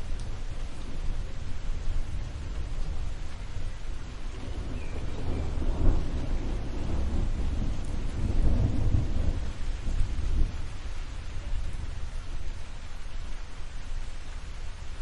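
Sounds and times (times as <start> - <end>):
steady rain: 0.0 - 15.0
rolling thunder: 0.9 - 12.1.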